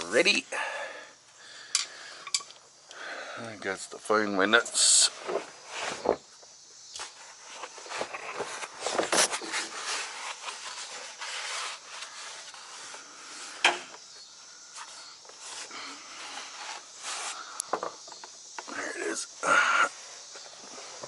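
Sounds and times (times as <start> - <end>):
hands rummaging and scraping: 7.0 - 13.1.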